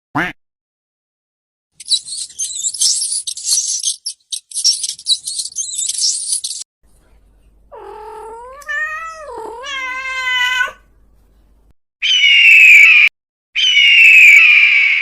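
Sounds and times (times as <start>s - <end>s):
shrill falling animal calls: 12.0s - 15.0s.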